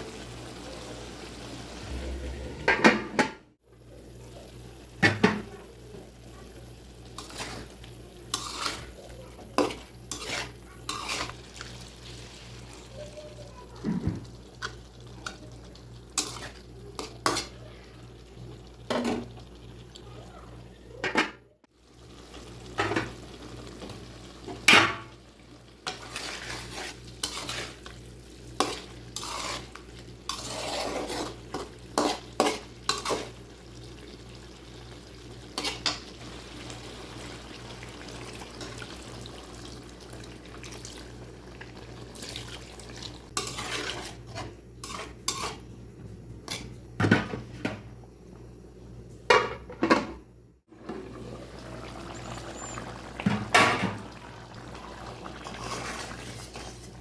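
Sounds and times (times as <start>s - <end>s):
metal spatula scraping a pan: 7.2s - 7.7s, 8.3s - 9.0s, 9.6s - 11.6s, 25.8s - 27.9s, 28.6s - 33.4s, 35.6s - 36.0s, 43.3s - 45.7s, 55.4s - 57.0s.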